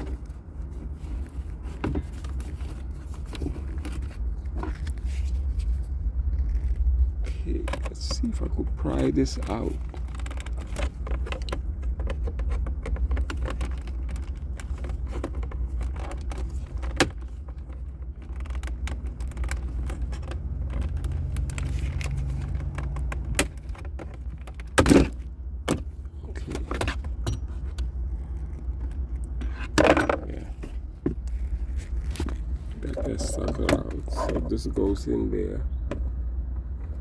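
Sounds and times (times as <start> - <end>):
steady low hum: 0.0 - 37.0
plastic trim clicking and scraping: 7.5 - 34.7.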